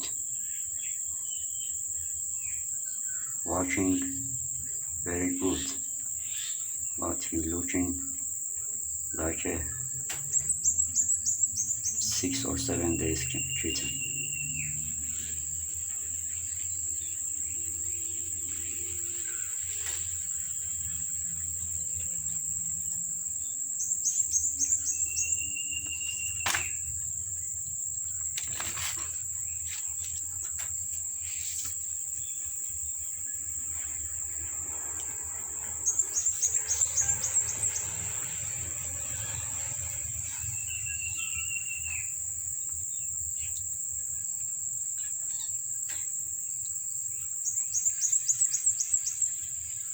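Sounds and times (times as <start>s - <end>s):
high-pitched insect chorus: 0.0s - 49.9s
thin high falling calls: 9.1s - 21.2s, 23.9s - 30.2s, 31.2s - 42.4s.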